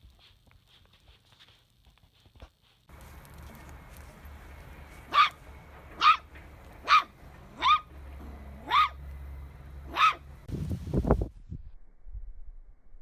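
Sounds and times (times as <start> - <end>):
dog barking high yips: 5.1 - 5.4, 6.0 - 7.9, 8.6 - 9.0, 9.9 - 10.3.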